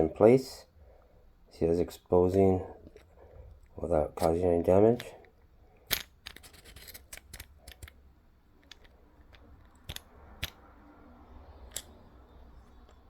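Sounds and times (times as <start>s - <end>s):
small metal parts clicking: 5.0s - 8.0s, 8.6s - 10.6s, 11.6s - 12.0s.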